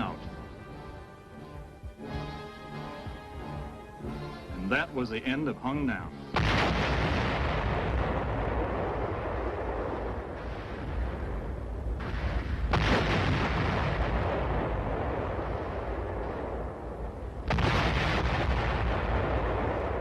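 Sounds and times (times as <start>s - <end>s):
demolition explosions rumbling: 4.6s - 20.0s.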